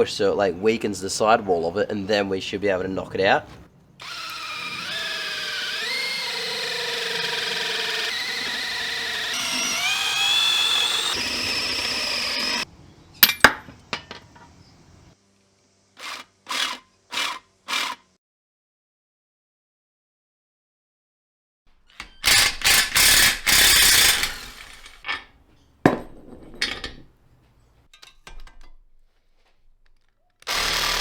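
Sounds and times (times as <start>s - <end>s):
power drill drilling into rubber: 4.0s - 12.6s, 22.2s - 25.0s, 30.4s - 31.0s
short drill bursts: 22.2s - 25.0s, 30.5s - 31.0s.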